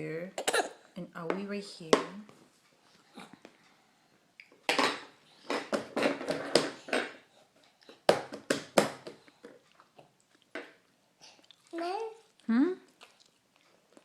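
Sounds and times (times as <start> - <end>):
cutlery and dishes clattering: 4.7 - 7.2.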